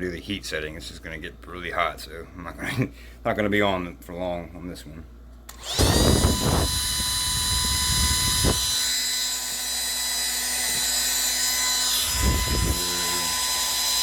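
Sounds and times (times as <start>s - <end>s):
hair dryer running: 5.5s - 14.0s.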